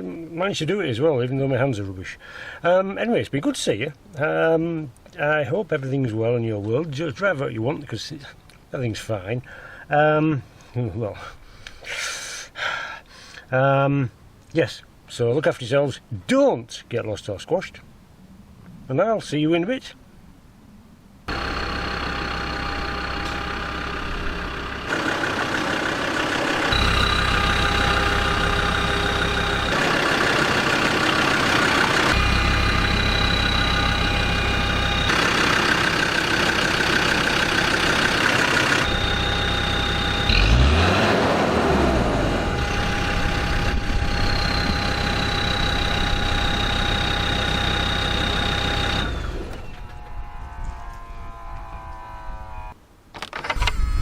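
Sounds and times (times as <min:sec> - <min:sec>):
diesel engine running: 0:21.3 - 0:52.8.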